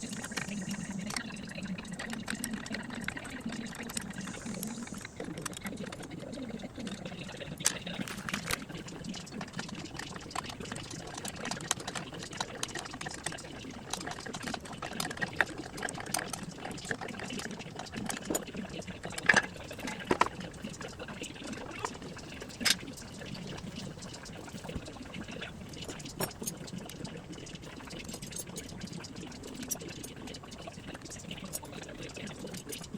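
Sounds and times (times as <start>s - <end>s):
tools clicking and knocking: 19.2s - 20.4s, 25.8s - 27.0s.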